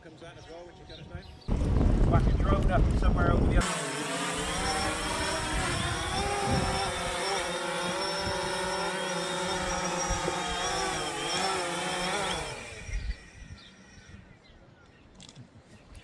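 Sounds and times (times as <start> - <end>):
drone propellers buzzing: 1.4 - 14.2.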